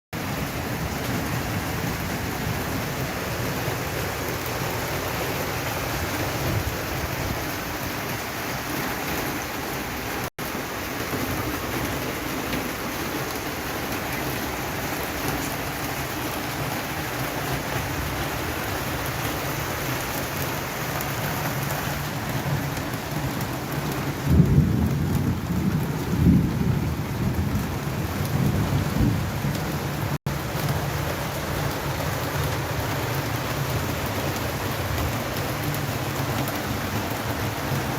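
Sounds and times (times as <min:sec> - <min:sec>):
steady rain falling: 0:00.2 - 0:37.9.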